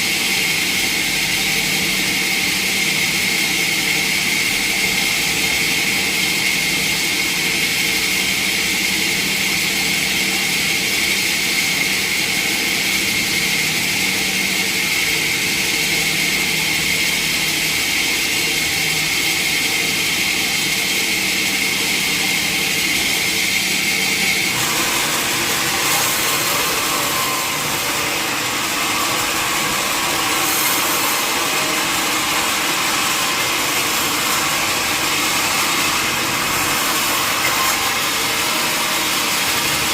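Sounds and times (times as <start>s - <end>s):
sawmill machinery whining: 8.8s - 39.9s.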